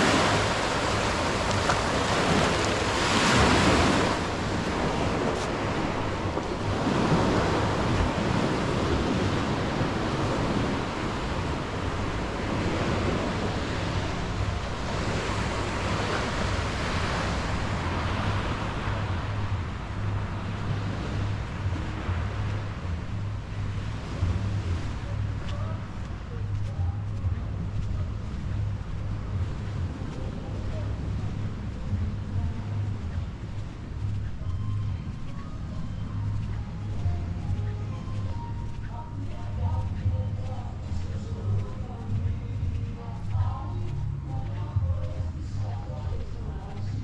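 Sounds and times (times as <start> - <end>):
sea waves breaking on beach: 0.0 - 26.2
wind rumbling on microphone: 0.0 - 47.0.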